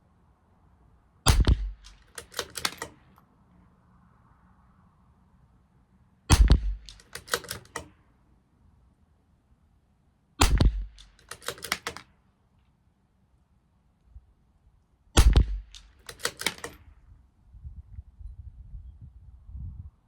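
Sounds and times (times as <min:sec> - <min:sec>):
rifle shots: 0:01.3 - 0:03.1, 0:06.3 - 0:07.9, 0:10.4 - 0:12.1, 0:15.2 - 0:16.8
rifle bolt clicking: 0:01.3 - 0:03.2, 0:06.3 - 0:08.0, 0:10.4 - 0:12.1, 0:15.2 - 0:16.8.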